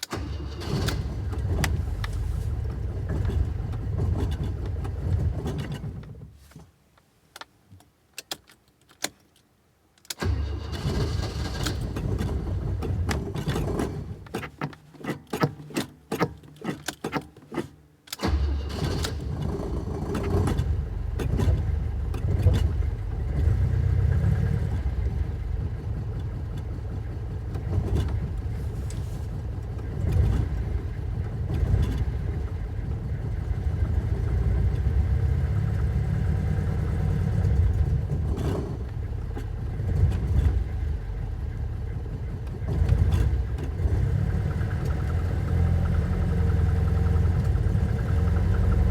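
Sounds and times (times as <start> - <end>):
car engine starting and revving: 0.0 - 6.2, 10.1 - 14.6, 18.1 - 48.9.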